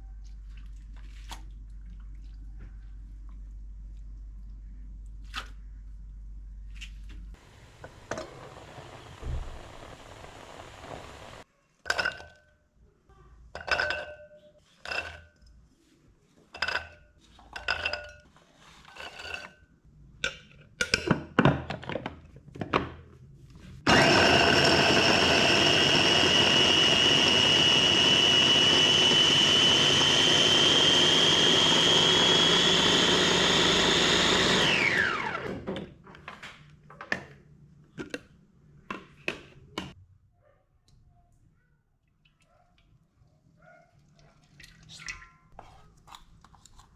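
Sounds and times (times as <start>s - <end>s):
electric blender motor whine: 7.4s - 11.4s, 23.9s - 35.8s.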